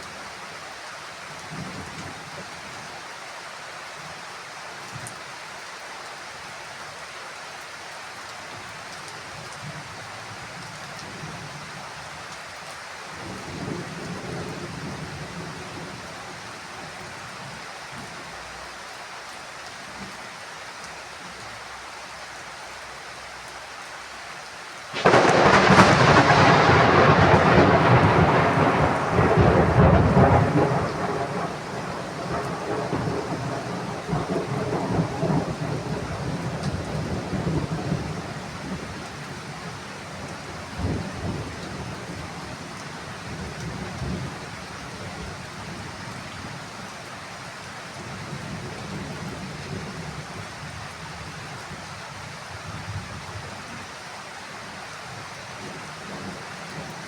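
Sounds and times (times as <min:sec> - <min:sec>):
heavy rain: 0:00.0 - 0:57.0
loud thunderclap: 0:25.0 - 0:36.0
thunder rumbling: 0:25.0 - 0:38.9.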